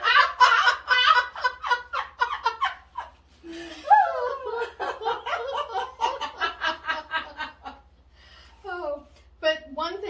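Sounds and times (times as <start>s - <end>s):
women laughing: 0.0s - 7.9s.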